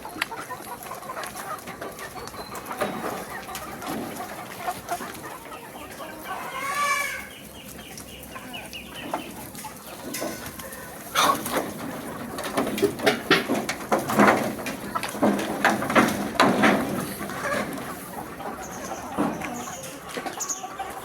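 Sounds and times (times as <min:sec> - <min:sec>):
chickens clucking: 0:00.0 - 0:21.0
rooster crowing: 0:06.4 - 0:07.3.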